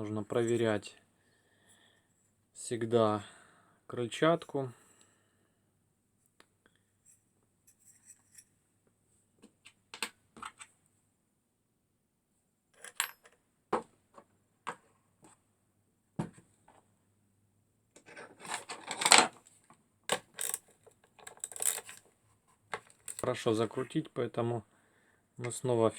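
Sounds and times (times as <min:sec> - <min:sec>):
metal parts clattering and scraping: 0:18.0 - 0:19.3, 0:20.1 - 0:22.1, 0:22.8 - 0:23.3
metal tools clinking: 0:20.3 - 0:22.0, 0:22.8 - 0:23.3.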